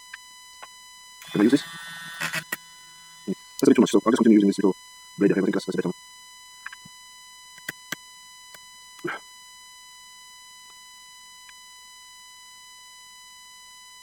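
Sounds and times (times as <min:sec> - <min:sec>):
high-pitched electronic tone: 0:01.2 - 0:05.9.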